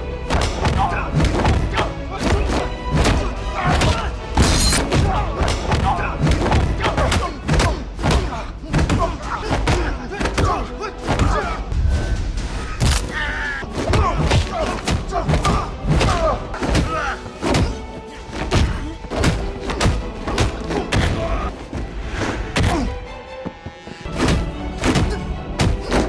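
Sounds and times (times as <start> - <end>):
background music: 0.0 - 26.0
punch and body-blow thuds: 13.7 - 22.9, 24.1 - 26.0.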